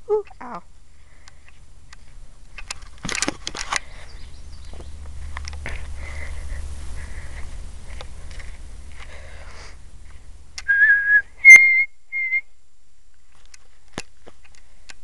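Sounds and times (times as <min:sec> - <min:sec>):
bird whistled call: 0:10.6 - 0:12.4.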